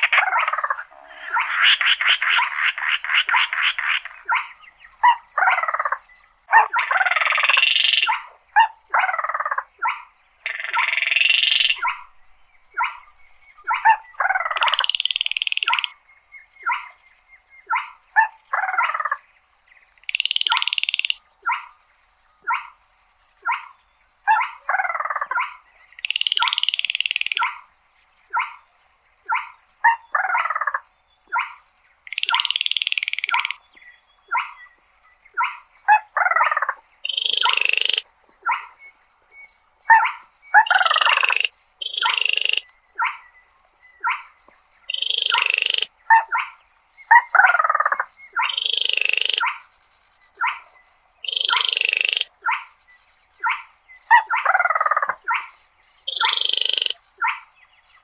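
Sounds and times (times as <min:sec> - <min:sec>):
bird rattling calls: 0:06.6 - 0:08.3, 0:09.1 - 0:12.0, 0:13.8 - 0:16.0, 0:20.0 - 0:21.7, 0:24.8 - 0:27.6, 0:32.1 - 0:33.6, 0:37.0 - 0:38.0, 0:40.6 - 0:42.6, 0:44.9 - 0:45.9, 0:48.4 - 0:49.6, 0:51.2 - 0:52.7, 0:56.1 - 0:57.0.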